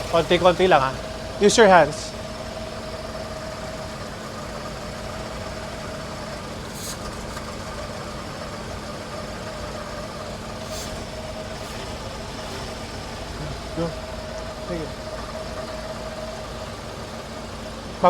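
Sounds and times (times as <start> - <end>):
car engine idling: 0.0 - 18.0
brief hisses: 6.7 - 7.4, 10.6 - 12.8.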